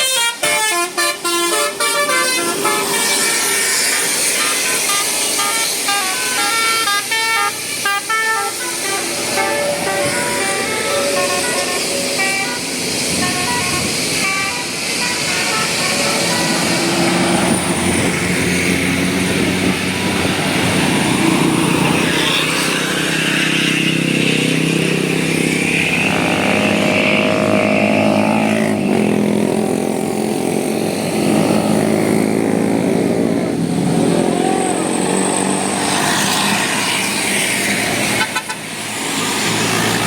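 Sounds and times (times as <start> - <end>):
bus horn playing tones: 0.0 - 18.2, 38.1 - 38.8
passing vehicle engines: 0.0 - 40.0.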